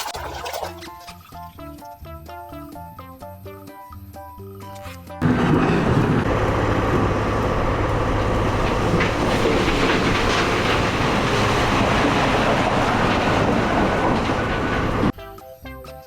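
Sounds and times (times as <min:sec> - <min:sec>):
loud rumbling clatter: 0:05.2 - 0:15.1.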